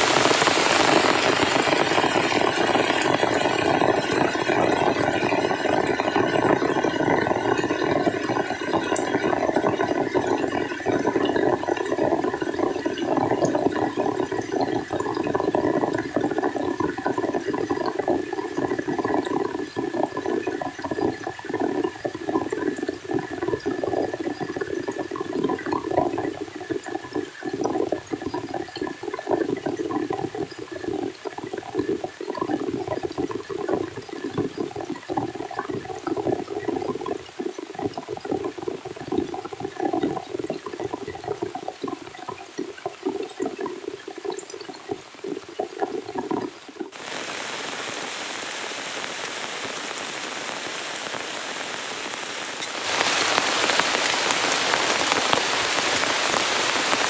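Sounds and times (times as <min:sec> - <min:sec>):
rushing water: 0:00.0 - 0:57.0.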